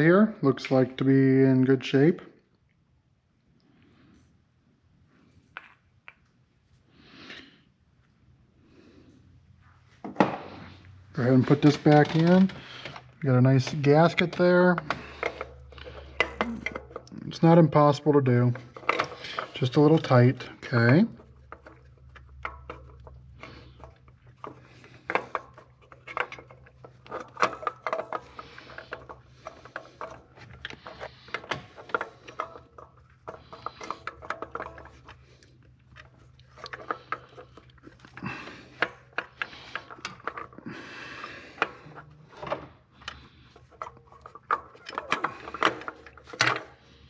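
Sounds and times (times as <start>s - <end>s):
metal parts clicking and scraping: 10.5s - 47.0s.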